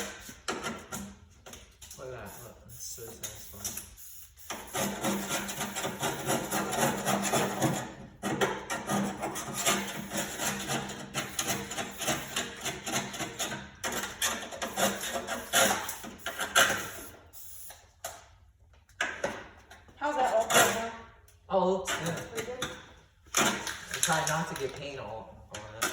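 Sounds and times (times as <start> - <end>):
scraper rasping rust off metal: 4.5 - 17.1.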